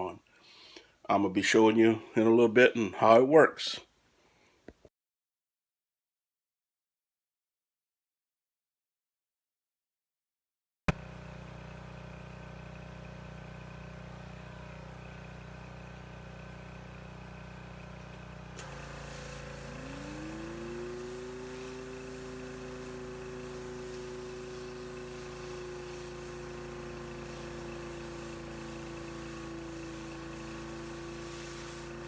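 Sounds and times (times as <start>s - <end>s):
pressure washer humming: 10.9s - 32.0s.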